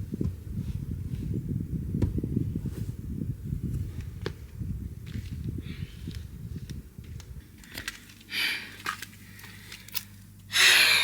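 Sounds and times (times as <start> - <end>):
person breathing hard: 8.3 - 11.0.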